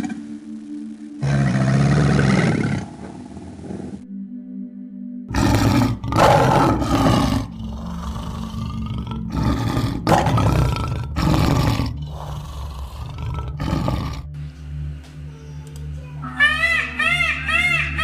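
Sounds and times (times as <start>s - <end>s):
large animal harsh calls: 16.2s - 18.0s.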